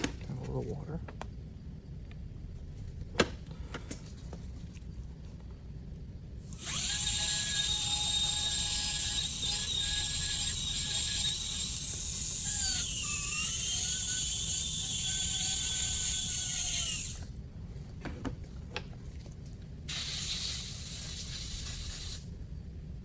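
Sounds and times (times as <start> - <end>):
dental drill whining: 6.4 - 17.3, 19.9 - 22.2.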